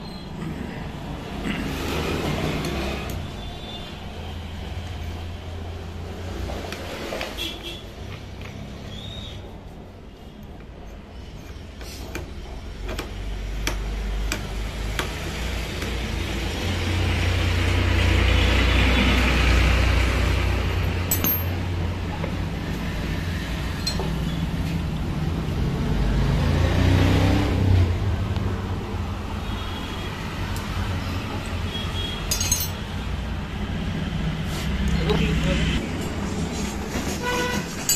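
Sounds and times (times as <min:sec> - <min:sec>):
road traffic rumble: 0:00.0 - 0:37.9
sharp metallic clinks: 0:21.0 - 0:21.6, 0:32.2 - 0:32.8.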